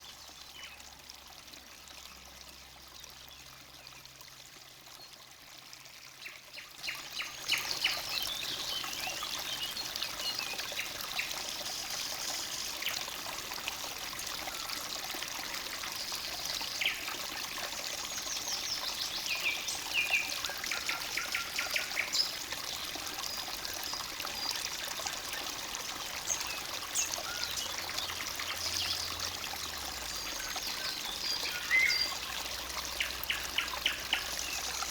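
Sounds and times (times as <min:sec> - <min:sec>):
stream babbling: 0:00.0 - 0:34.9
songbirds chirping: 0:26.2 - 0:34.9.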